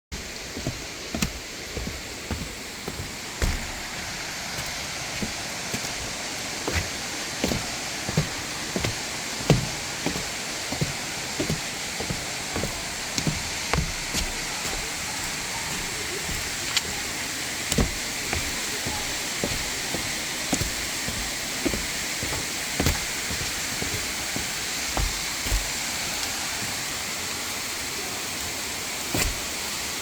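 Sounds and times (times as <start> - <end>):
rain and falling water rushing: 0.1 - 30.0
heavy drops tapping near microphone: 0.6 - 4.0.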